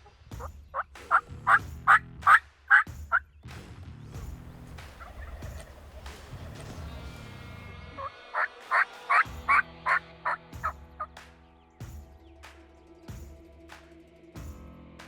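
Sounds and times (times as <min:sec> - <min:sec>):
wild turkey calling: 0:00.4 - 0:02.9, 0:04.3 - 0:10.8.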